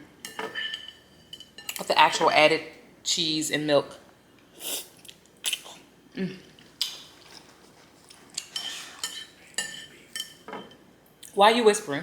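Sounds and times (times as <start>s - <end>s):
metal utensil clinking on bowl: 0.2s - 2.4s, 8.4s - 10.8s.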